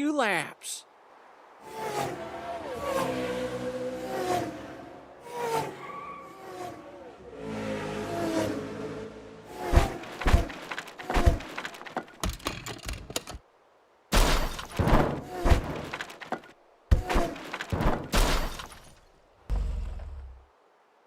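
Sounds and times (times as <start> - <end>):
crashing and smashing impacts: 9.6 - 13.0, 14.1 - 19.0.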